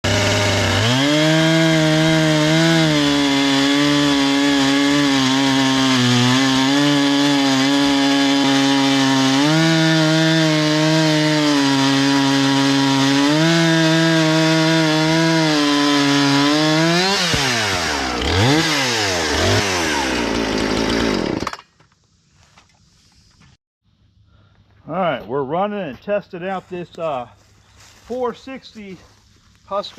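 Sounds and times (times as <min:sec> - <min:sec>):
chainsaw cutting wood: 0:00.0 - 0:21.8.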